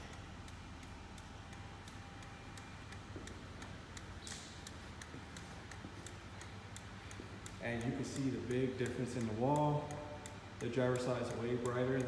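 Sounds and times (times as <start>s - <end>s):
low steady hum: 0.0s - 12.0s
turn-signal relay ticking: 0.0s - 12.0s.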